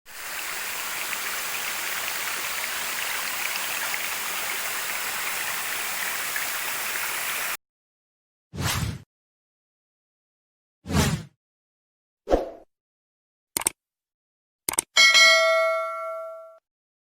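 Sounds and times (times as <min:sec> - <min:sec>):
waterfall and stream rushing: 0:00.1 - 0:07.6.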